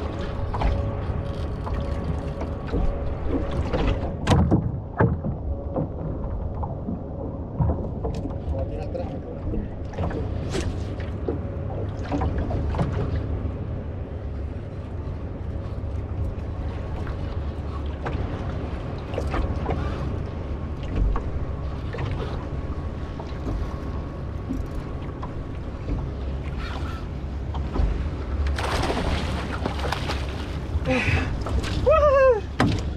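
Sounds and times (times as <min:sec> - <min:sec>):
boat engine rumble: 0:00.0 - 0:32.9
knocks and clunks from boat: 0:00.0 - 0:32.9
water: 0:00.0 - 0:32.9
wind: 0:00.0 - 0:32.9.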